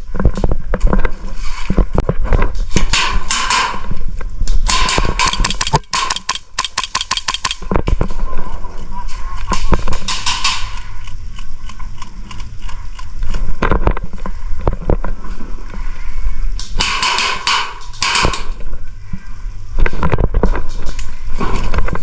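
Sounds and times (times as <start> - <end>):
hissing rustles: 0.0 - 22.0
steady low rumble: 0.0 - 22.0
sharp clicks: 4.4 - 8.0, 9.4 - 13.8, 16.6 - 18.6
rustling and knocking: 4.7 - 8.2.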